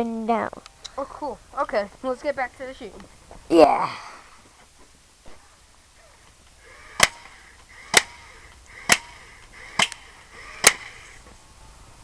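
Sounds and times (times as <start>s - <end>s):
firing motor whir: 6.6s - 11.2s
airsoft tank firing snaps: 6.8s - 11.2s.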